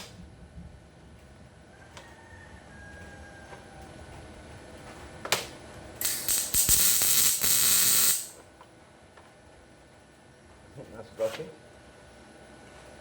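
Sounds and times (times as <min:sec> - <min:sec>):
welding arc crackling hiss: 0:06.0 - 0:08.4.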